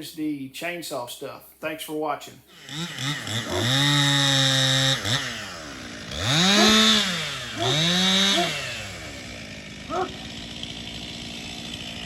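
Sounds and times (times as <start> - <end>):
chainsaw revving: 2.5 - 12.0.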